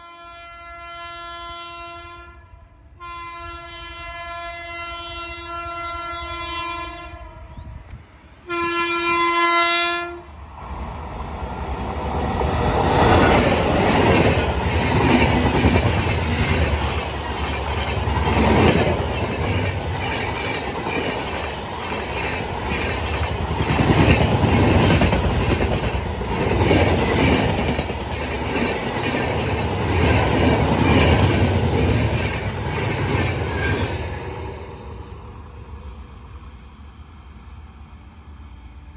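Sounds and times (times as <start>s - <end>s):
train horn blasts: 0.0s - 7.8s, 8.4s - 10.3s
train rumbling past: 2.5s - 38.9s.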